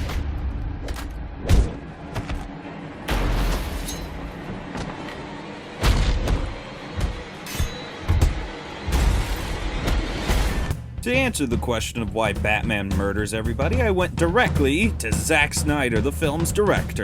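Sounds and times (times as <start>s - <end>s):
film music: 0.0s - 17.0s
heavy booms and thuds: 5.8s - 7.3s.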